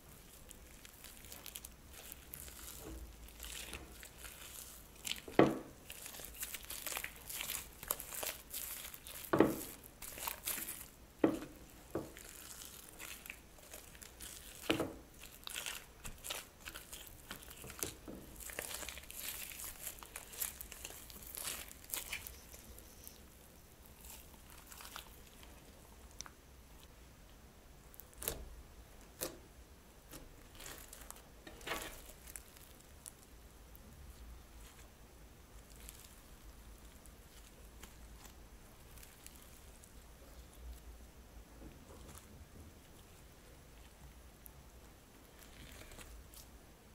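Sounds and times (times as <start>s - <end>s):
sticky slime crackling and popping: 0.0s - 26.9s, 27.9s - 33.4s, 35.6s - 40.7s, 41.9s - 46.6s
plastic bag crinkling: 0.1s - 11.0s, 11.6s - 25.6s, 30.4s - 33.1s.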